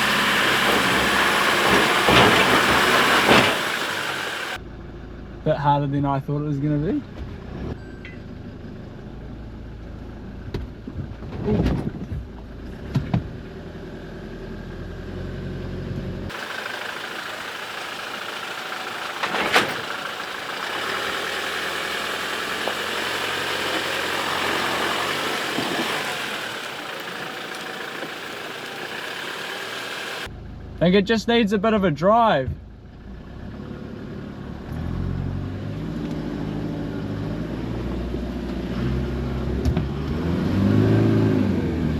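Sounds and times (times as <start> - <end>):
knocks and bumps: 0.0 - 4.6
off-road vehicle engine: 0.0 - 41.9.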